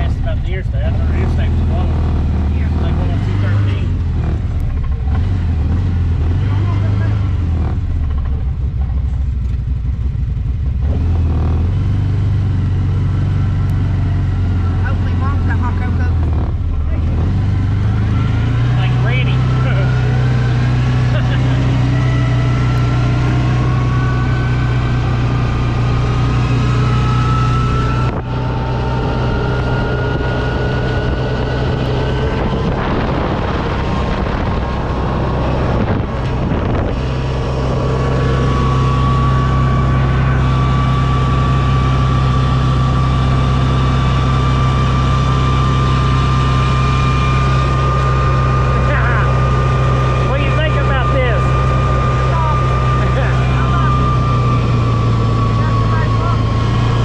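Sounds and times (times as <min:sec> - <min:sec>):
utility vehicle engine whine: 0:00.0 - 0:57.0
wind on microphone: 0:27.4 - 0:41.7.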